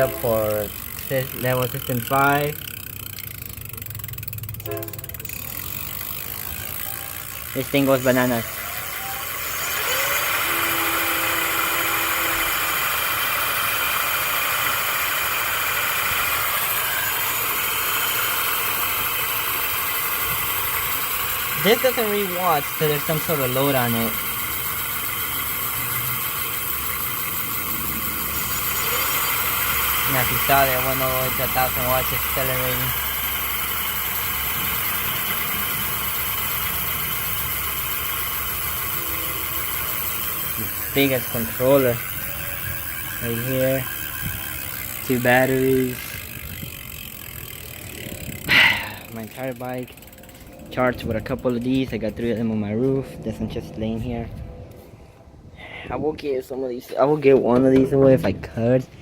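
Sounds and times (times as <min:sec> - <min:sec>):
electric motor whirring: 0:00.0 - 0:52.0
low hum: 0:00.0 - 0:55.6.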